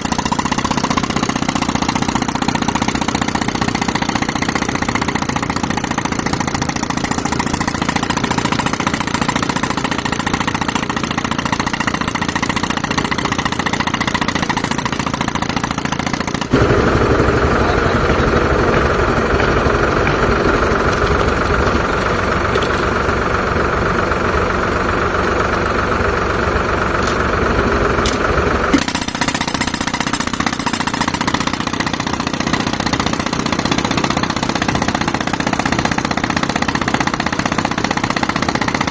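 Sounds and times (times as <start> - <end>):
loud rough engine sound: 0.0 - 38.9
tractor engine running compressor: 0.0 - 38.9.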